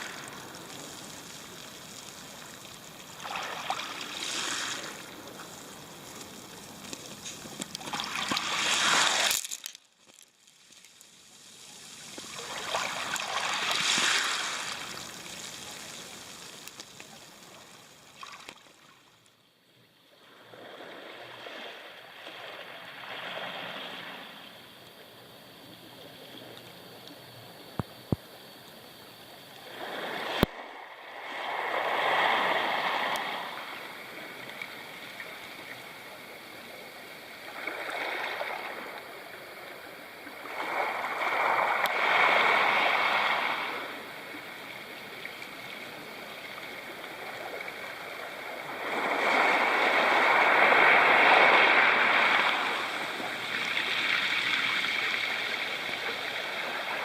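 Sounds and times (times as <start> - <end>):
waves on a pebble shore: 0.0 - 18.9, 29.6 - 36.0, 40.0 - 57.0.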